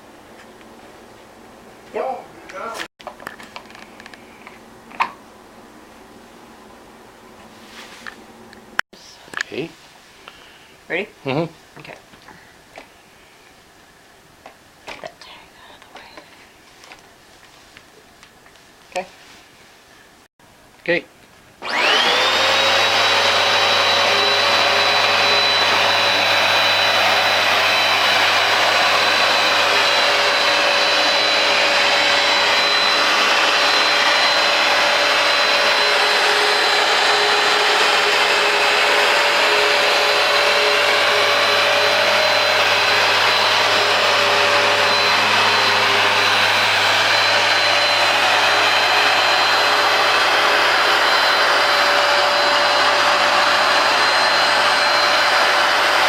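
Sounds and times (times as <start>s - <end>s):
carpet cleaner running: 21.6s - 56.0s.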